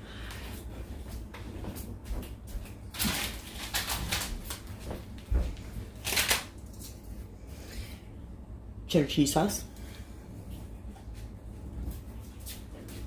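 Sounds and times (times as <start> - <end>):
food packaging rustling: 2.6 - 5.0.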